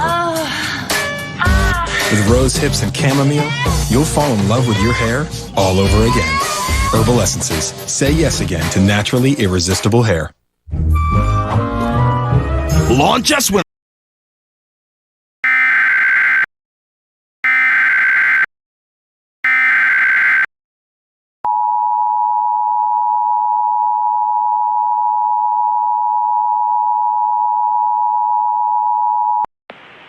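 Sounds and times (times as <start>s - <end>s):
two-tone attention signal: 15.4s - 16.5s, 17.4s - 18.5s, 19.4s - 20.5s
warbling digital data tones: 19.4s - 20.5s.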